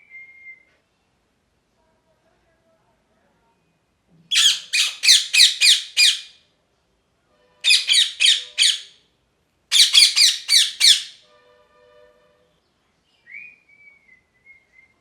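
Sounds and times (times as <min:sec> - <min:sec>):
parrot squawking: 0:04.3 - 0:06.4, 0:07.6 - 0:09.0, 0:09.7 - 0:11.2.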